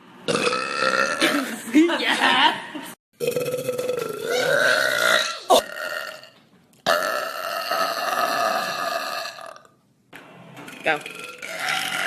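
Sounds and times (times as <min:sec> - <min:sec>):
woman burping: 0:00.3 - 0:01.7, 0:03.2 - 0:09.7, 0:11.0 - 0:12.0.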